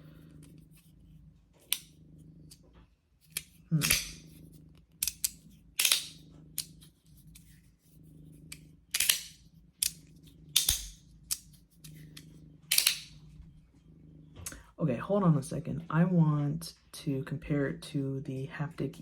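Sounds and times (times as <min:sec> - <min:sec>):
magnetic slider snapping shut: 0:05.0 - 0:06.1, 0:12.7 - 0:13.0.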